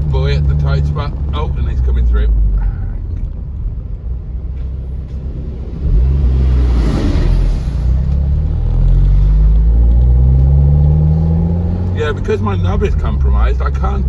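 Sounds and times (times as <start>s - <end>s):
car engine accelerating: 0.0s - 14.0s
vehicle passing: 4.6s - 12.4s.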